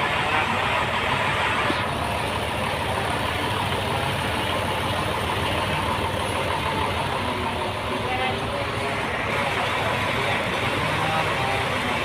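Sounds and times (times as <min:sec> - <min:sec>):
sawmill machinery droning: 0:00.0 - 0:12.0.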